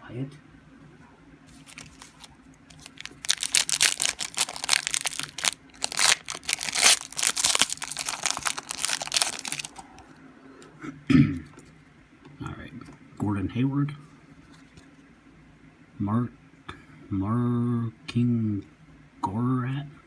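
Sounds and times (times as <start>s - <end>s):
foil wrapper tearing and crinkling: 1.6s - 9.8s.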